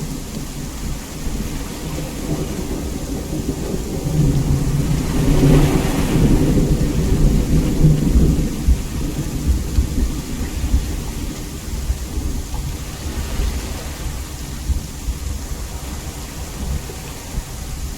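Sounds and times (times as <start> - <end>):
deep thunder rumble: 0.0 - 17.9
heavy rain falling: 0.0 - 17.9.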